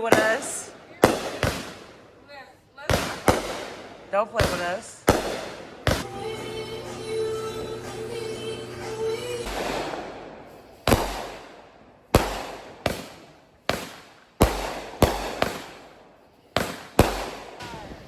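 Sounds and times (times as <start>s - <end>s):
fireworks bangs echoing: 0.0s - 18.0s
fireworks crackling: 0.0s - 18.0s
music: 6.0s - 9.7s.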